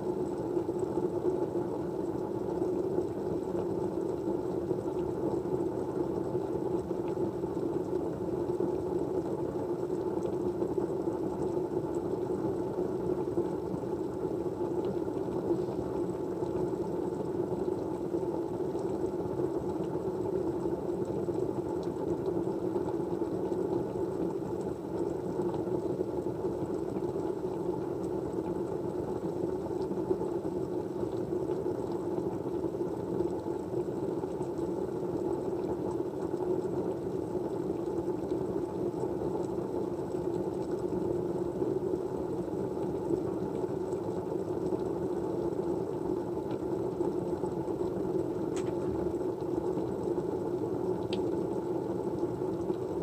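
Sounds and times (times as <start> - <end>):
muffled white noise: 0.0 - 53.0
faint ticks: 51.0 - 51.3.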